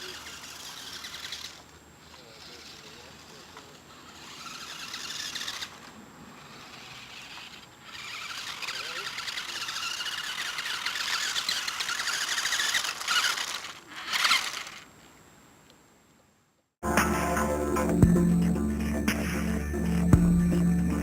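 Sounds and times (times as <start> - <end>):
toy car electric motor whining: 0.0 - 14.9.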